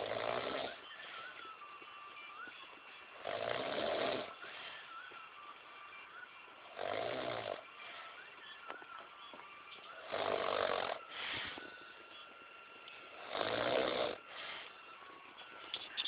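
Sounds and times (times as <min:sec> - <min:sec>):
loud snores: 0:00.0 - 0:00.8, 0:03.2 - 0:04.4, 0:06.6 - 0:07.7, 0:10.0 - 0:11.1, 0:13.1 - 0:14.3
faint breath: 0:00.9 - 0:01.6, 0:04.2 - 0:05.2, 0:07.7 - 0:08.5, 0:11.0 - 0:12.4, 0:14.2 - 0:16.0.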